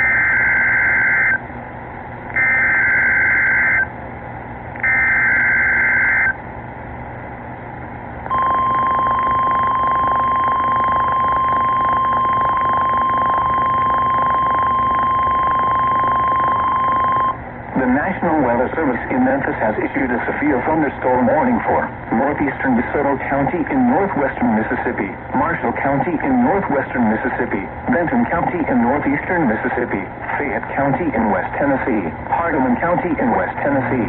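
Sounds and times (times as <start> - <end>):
steady warning alarm tone: 0.0 - 1.4, 2.4 - 3.9, 4.8 - 6.4, 8.3 - 17.4.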